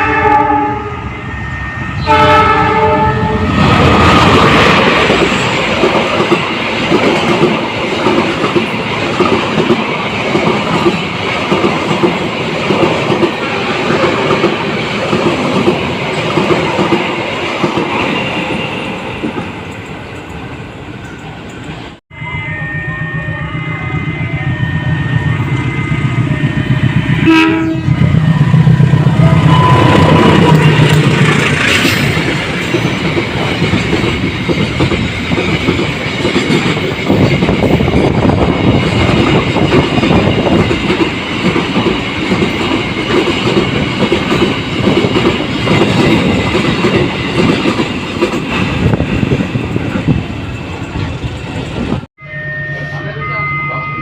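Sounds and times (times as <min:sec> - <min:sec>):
locomotive horn: 0:00.0 - 0:03.6, 0:22.1 - 0:31.2.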